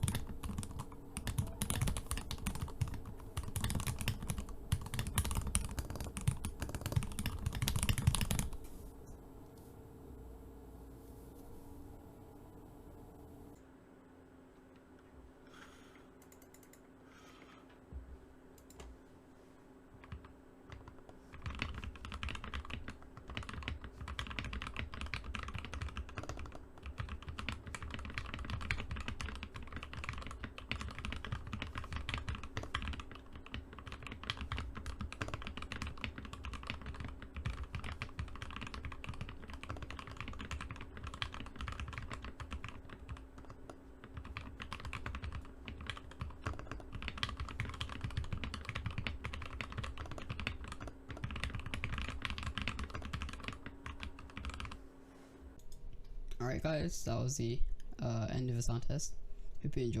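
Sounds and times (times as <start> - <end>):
typing on mechanical keyboard: 0.0 - 8.6, 20.0 - 54.8.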